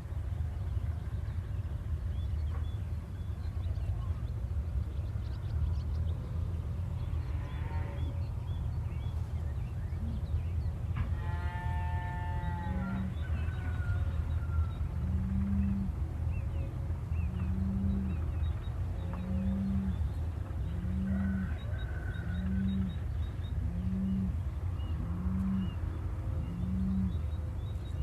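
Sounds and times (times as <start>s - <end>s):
birds chirping: 0.0s - 28.0s
highway traffic rumble: 0.0s - 28.0s.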